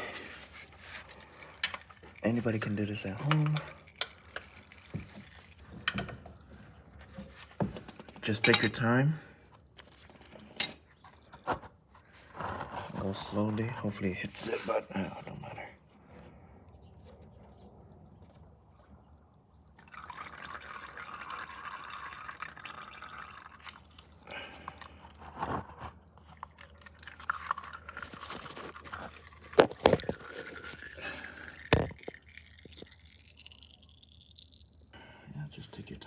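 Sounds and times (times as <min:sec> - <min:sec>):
oil dripping into pan: 0:00.9 - 0:06.8, 0:19.0 - 0:25.0, 0:26.1 - 0:35.0.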